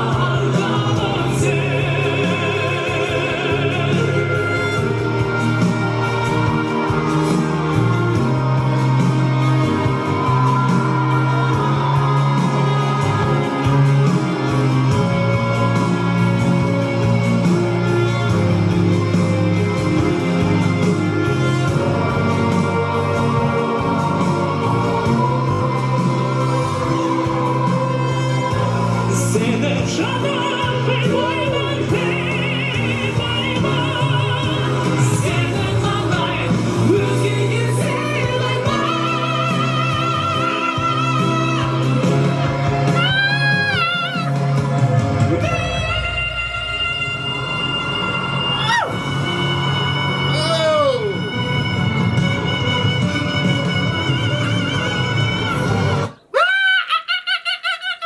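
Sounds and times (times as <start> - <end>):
live band playing: 0.0 - 56.2
steady bass line: 0.0 - 56.2
man singing a ballad: 29.1 - 43.3.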